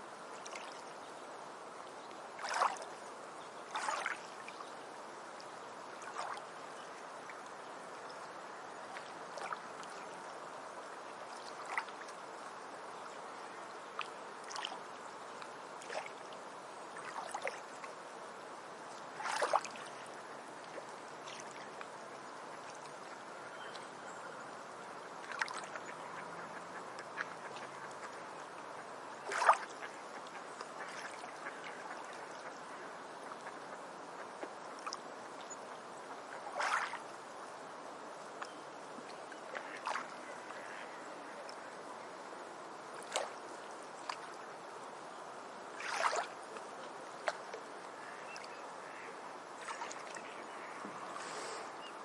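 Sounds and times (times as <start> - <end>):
stream trickling and gurgling: 0.0 - 52.0
water splashing: 0.4 - 0.9, 2.4 - 3.0, 3.7 - 4.6, 6.0 - 6.5, 8.9 - 10.2, 11.2 - 12.6, 14.0 - 14.9, 15.8 - 17.9, 19.1 - 21.8, 25.2 - 28.2, 29.2 - 32.5, 36.3 - 37.2, 39.1 - 41.7, 42.9 - 44.4, 45.7 - 51.6.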